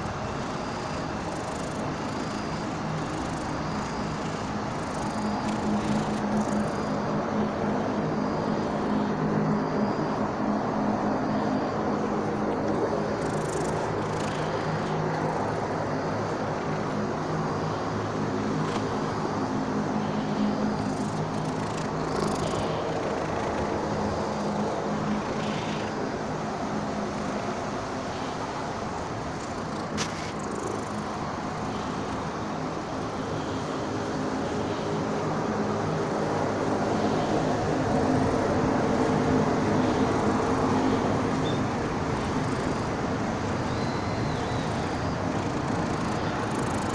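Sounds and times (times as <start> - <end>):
road traffic hum: 0.0 - 46.9.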